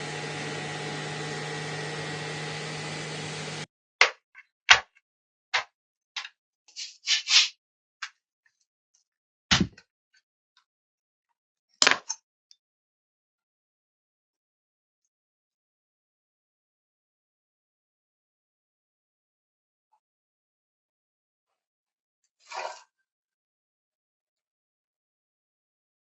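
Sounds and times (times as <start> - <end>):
laptop fan whining: 0.0 - 3.7.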